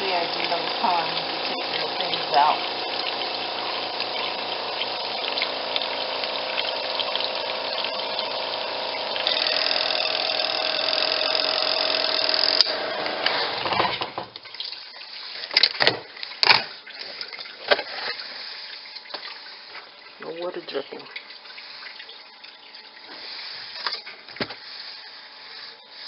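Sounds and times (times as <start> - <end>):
spin dryer running: 0.0 - 14.3.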